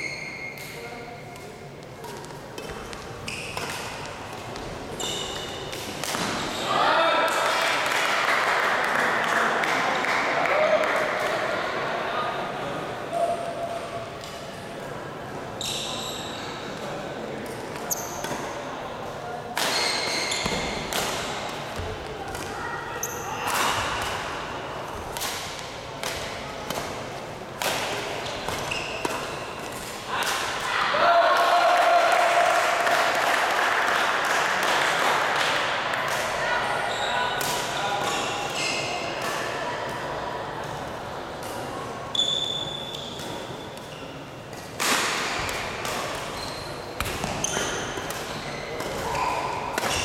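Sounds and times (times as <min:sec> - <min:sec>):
shoes squeaking on court floor: 0:00.0 - 0:05.7, 0:15.6 - 0:16.8, 0:17.5 - 0:18.6, 0:19.7 - 0:20.9, 0:23.0 - 0:23.8, 0:28.2 - 0:29.8, 0:38.0 - 0:39.1, 0:42.1 - 0:44.2, 0:46.2 - 0:50.0.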